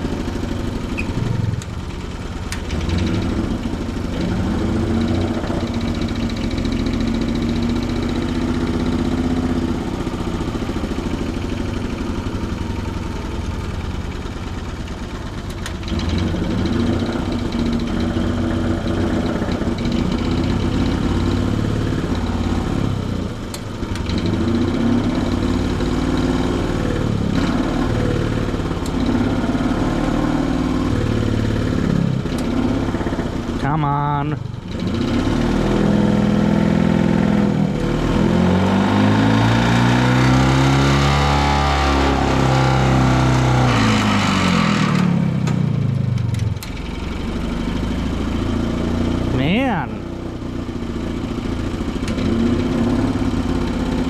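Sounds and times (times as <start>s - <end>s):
small engine running steadily: 0.0s - 54.0s.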